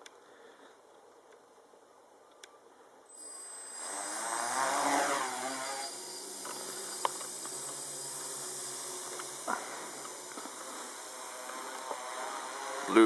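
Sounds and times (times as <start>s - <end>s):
drone motors and propellers whirring: 3.1s - 13.0s.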